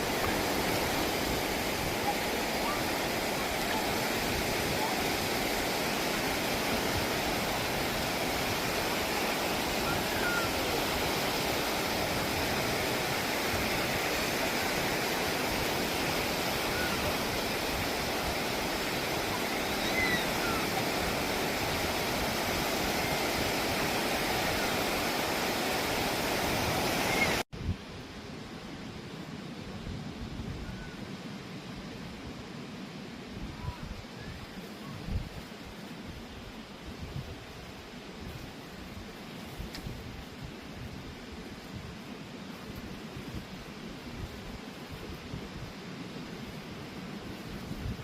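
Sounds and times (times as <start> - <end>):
sea waves rushing: 0.0 - 27.5.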